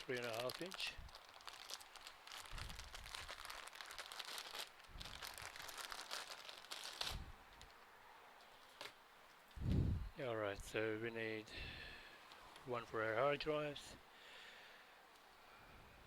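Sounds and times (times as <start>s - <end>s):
plastic packaging rustling: 0.0s - 9.0s.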